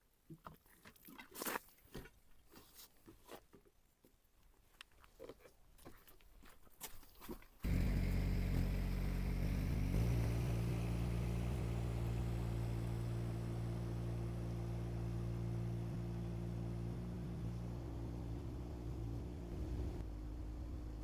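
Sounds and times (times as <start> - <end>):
excavator diesel engine idling: 7.6 - 15.0.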